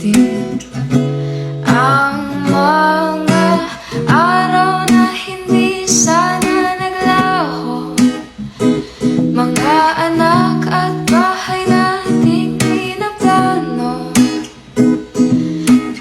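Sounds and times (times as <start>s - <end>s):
plucked acoustic guitar: 0.0s - 16.0s
person singing: 1.5s - 8.4s, 9.3s - 14.5s.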